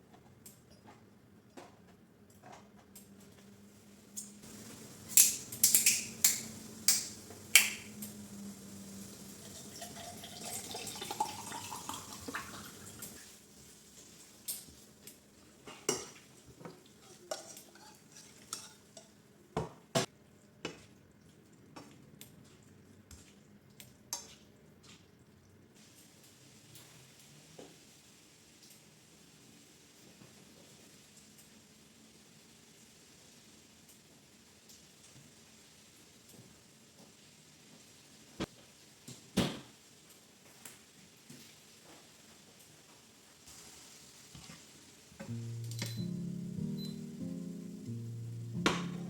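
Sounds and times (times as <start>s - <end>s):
dishes and cutlery clinking: 17.0s - 19.2s
tone rising in pitch: 45.2s - 49.0s.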